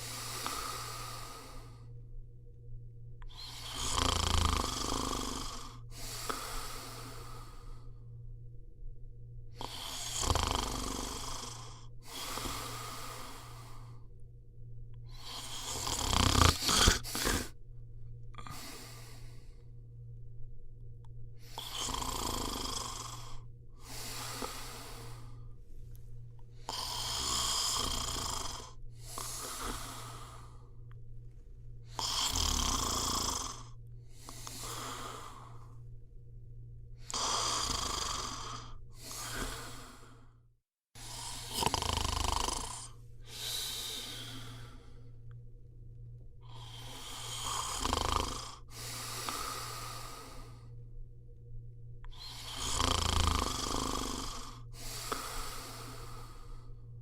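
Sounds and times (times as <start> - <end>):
person snoring: 0.0 - 2.0, 3.2 - 8.1, 9.5 - 14.1, 15.0 - 17.6, 18.3 - 19.8, 21.4 - 25.6, 26.5 - 30.9, 31.8 - 35.9, 37.0 - 40.4, 41.0 - 45.4, 46.4 - 50.8, 52.0 - 56.9
steady low hum: 0.0 - 57.0.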